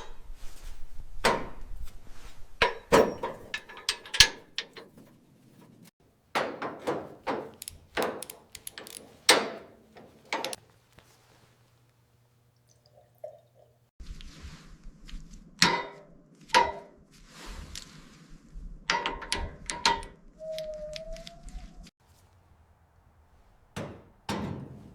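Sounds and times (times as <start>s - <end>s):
tools knocking and clanking: 2.6s - 5.2s, 6.3s - 10.6s, 23.8s - 24.9s.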